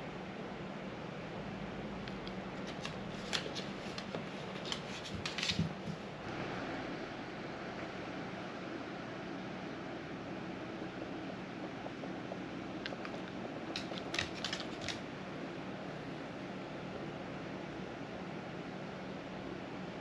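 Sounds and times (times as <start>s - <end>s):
light clicks and rustling: 12.9s - 15.0s.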